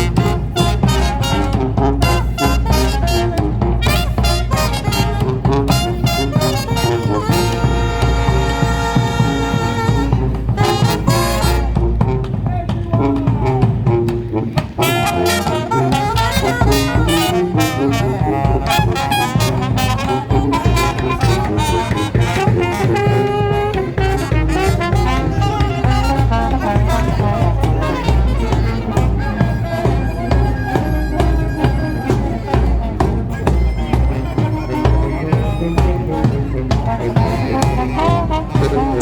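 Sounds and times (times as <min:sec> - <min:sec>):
drum beat: 0:00.0 - 0:34.9, 0:35.8 - 0:39.0
horns: 0:00.0 - 0:39.0
street band playing jazz: 0:00.0 - 0:39.0
bass line: 0:37.4 - 0:39.0.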